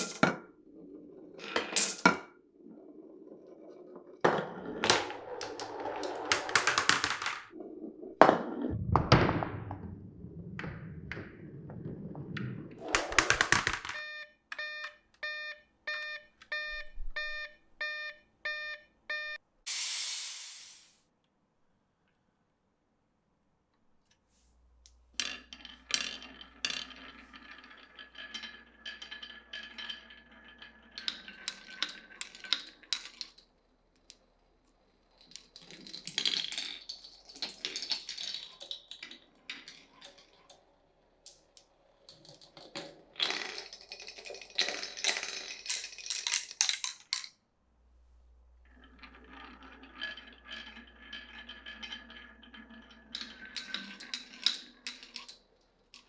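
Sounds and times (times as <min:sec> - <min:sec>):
marbles rattling down wooden run: 0:03.4 - 0:07.6, 0:12.8 - 0:14.0, 0:42.2 - 0:47.3.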